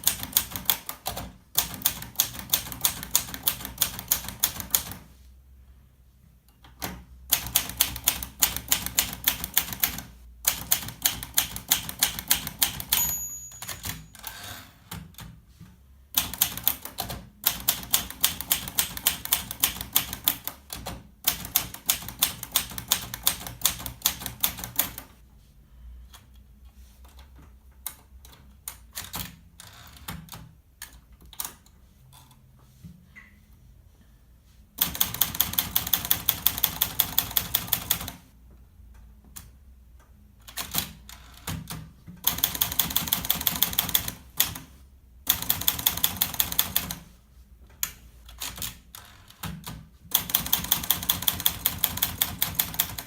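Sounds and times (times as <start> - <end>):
typewriter key strikes: 10.5 - 14.4
typewriter bell ring: 12.5 - 14.6.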